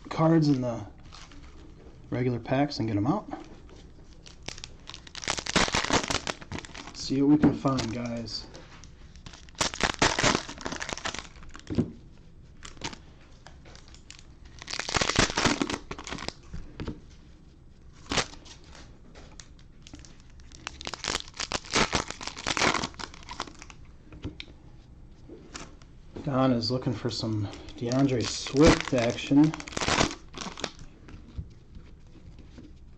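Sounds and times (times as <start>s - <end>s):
plastic wrappers crinkling: 0.2s - 1.8s, 3.5s - 11.7s, 12.6s - 16.5s, 18.0s - 23.9s, 27.1s - 32.6s.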